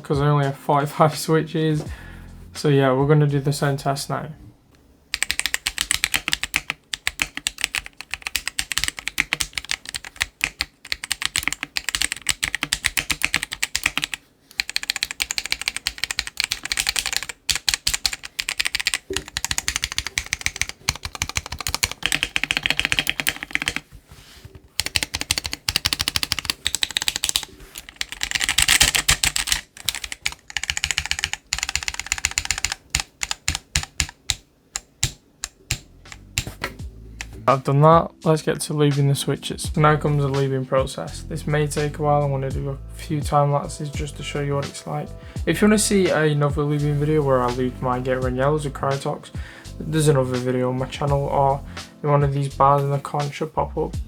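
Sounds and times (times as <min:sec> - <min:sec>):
mechanical keyboard typing: 0:05.1 - 0:23.9, 0:24.6 - 0:37.5.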